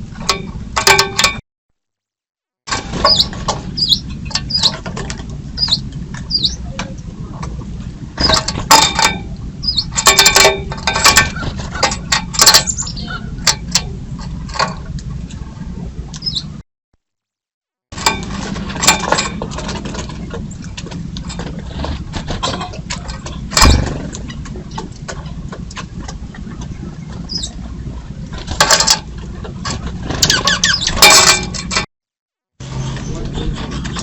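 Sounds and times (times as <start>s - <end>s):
birds pecking and knocking: 0.0s - 1.4s, 2.7s - 15.5s, 18.0s - 31.9s
steady low hum: 2.7s - 16.6s, 18.0s - 31.9s
birds chirping: 3.0s - 4.9s, 5.5s - 7.2s, 9.6s - 10.0s, 12.4s - 13.5s, 16.1s - 16.6s, 26.3s - 28.0s.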